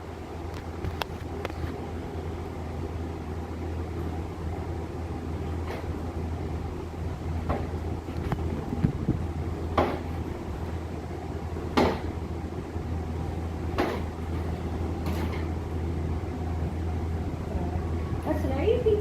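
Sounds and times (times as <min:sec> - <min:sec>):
steady low hum: 0:00.0 - 0:19.0
sharp knocks from scooter repair: 0:09.8 - 0:10.2, 0:11.7 - 0:12.2, 0:13.8 - 0:14.1.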